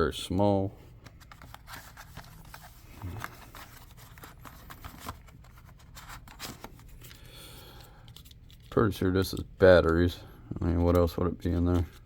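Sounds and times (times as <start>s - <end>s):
packaging rustling and clicking: 1.0s - 10.0s.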